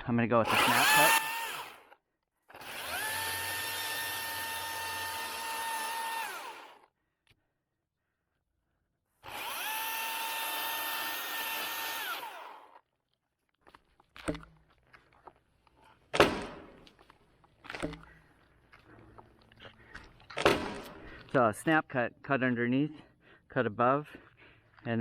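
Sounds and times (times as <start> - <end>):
battery chainsaw whining: 0.4 - 6.9, 9.2 - 12.8
sharp knocks: 16.1 - 16.9.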